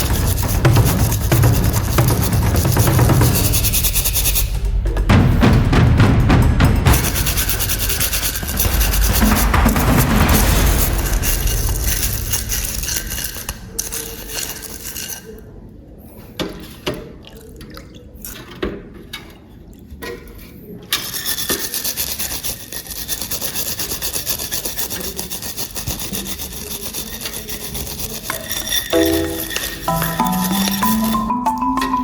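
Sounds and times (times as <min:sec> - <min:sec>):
hand tool scraping: 0:00.0 - 0:04.6, 0:06.9 - 0:15.2, 0:21.0 - 0:31.0.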